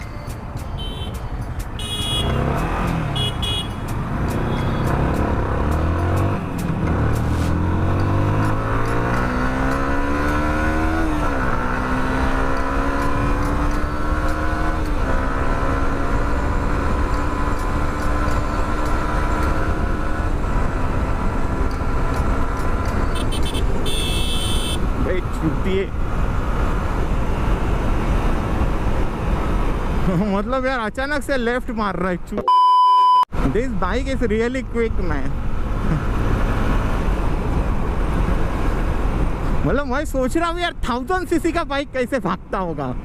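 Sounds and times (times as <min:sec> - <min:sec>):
motorcycle engine accelerating: 0:04.0 - 0:23.7.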